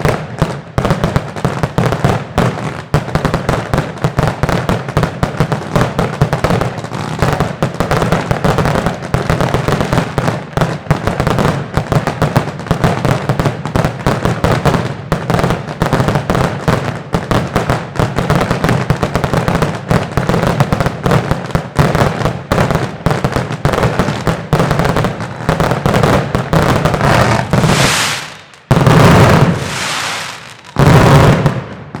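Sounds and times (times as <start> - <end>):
fireworks and firecrackers crackling: 0.0 - 32.0
loud close blasts: 26.8 - 31.8.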